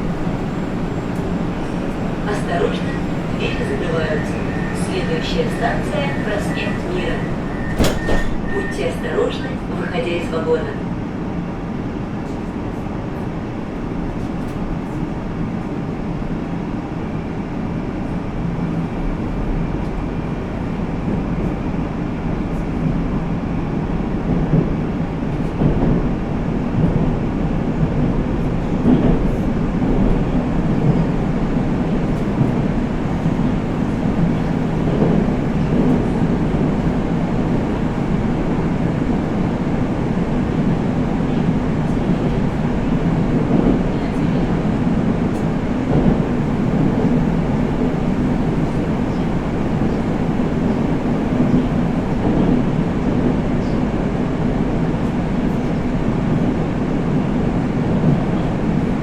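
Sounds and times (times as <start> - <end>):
subway car interior running noise: 0.0 - 59.0
wheels rumbling on rail: 0.0 - 59.0.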